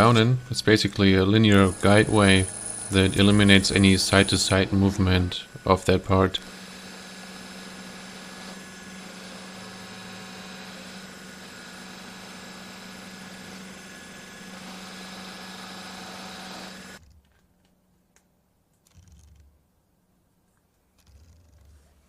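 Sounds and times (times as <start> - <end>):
milling machine humming: 0.0 - 17.0.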